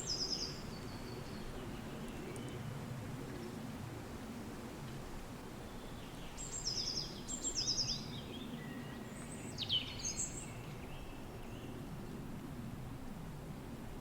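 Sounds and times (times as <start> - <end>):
songbird singing: 0.0 - 2.7, 5.6 - 11.9.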